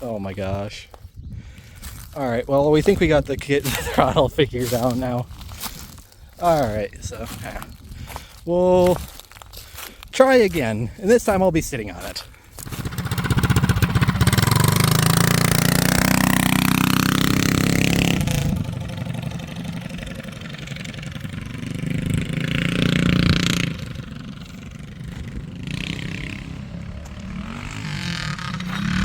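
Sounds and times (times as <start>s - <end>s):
small gas engine revving: 12.6s - 29.0s.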